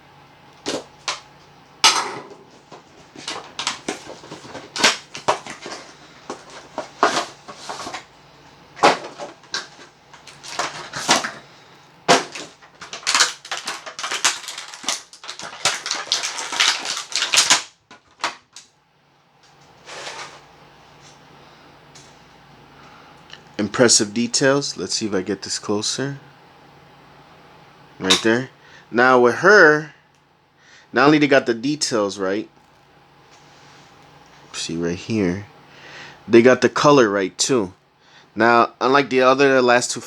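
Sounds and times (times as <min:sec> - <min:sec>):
plastic packaging crinkling: 0:02.5 - 0:08.2, 0:08.8 - 0:11.4, 0:12.1 - 0:18.7.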